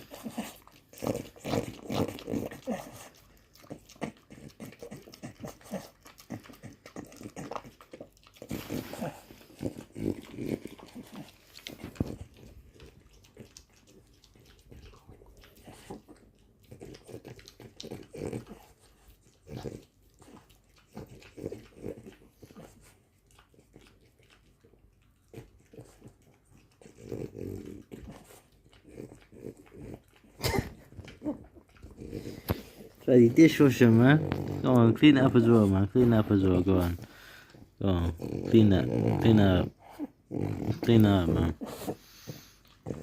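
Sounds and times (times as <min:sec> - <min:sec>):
dog grunting: 0:00.0 - 0:13.7, 0:25.3 - 0:43.0
dog licking and chewing: 0:00.0 - 0:43.0.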